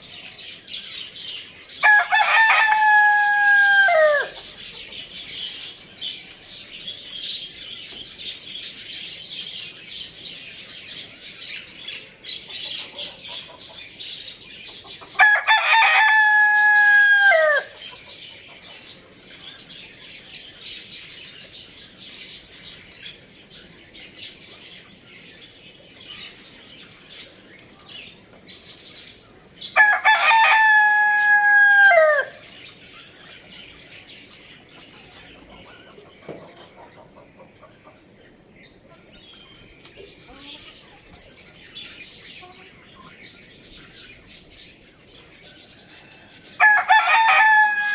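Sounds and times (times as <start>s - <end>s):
birds chirping: 0.0s - 47.9s
rooster crowing: 1.8s - 4.4s, 15.2s - 17.8s, 29.8s - 32.4s, 46.0s - 47.9s.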